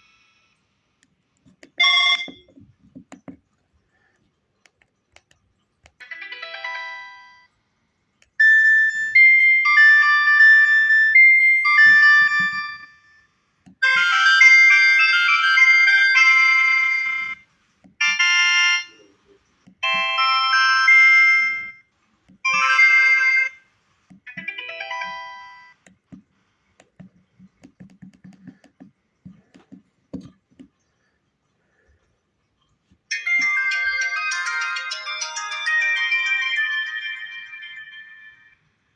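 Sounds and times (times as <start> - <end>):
ringtone melody: 1.7 - 2.7, 6.0 - 7.5, 8.4 - 25.8, 33.1 - 38.9
phone alert chimes: 1.8 - 2.6, 8.4 - 13.2.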